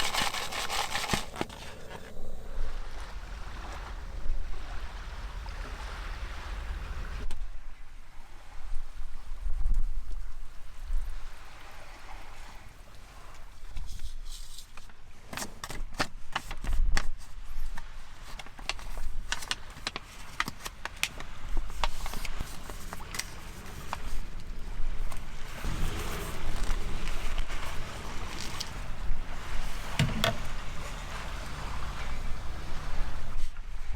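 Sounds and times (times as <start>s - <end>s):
wind rumble on microphone: 1.4s - 14.6s, 21.0s - 33.9s.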